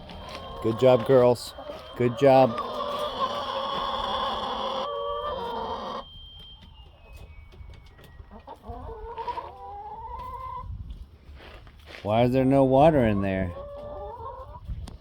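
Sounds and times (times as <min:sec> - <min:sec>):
hens clucking and calling: 0:00.0 - 0:06.2, 0:07.9 - 0:10.7, 0:12.8 - 0:15.0.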